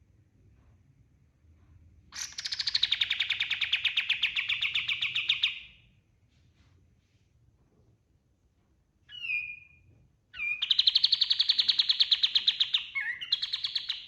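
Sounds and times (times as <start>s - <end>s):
songbird trilling: 2.2s - 5.6s, 9.1s - 9.8s, 10.4s - 14.0s.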